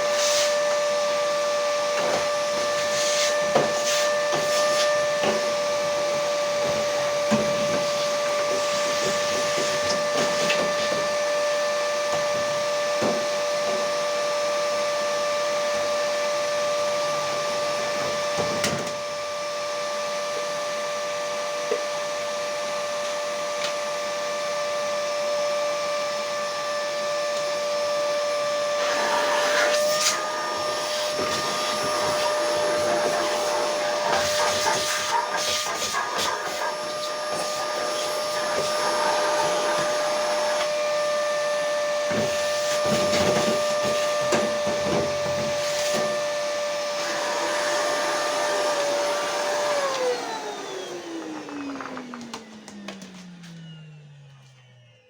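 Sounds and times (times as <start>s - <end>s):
electric motor whining: 28.8s - 55.0s.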